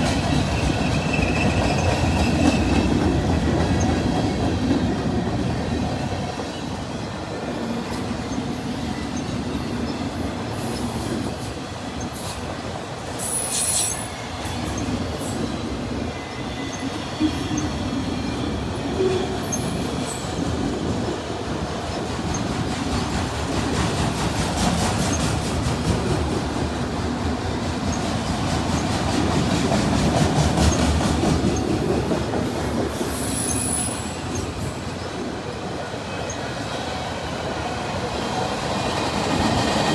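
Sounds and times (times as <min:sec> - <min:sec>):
train wheels clacking over rail joints: 0:00.0 - 0:06.5, 0:19.0 - 0:34.9
high-pitched wheel squeals: 0:13.2 - 0:14.9, 0:33.0 - 0:34.4.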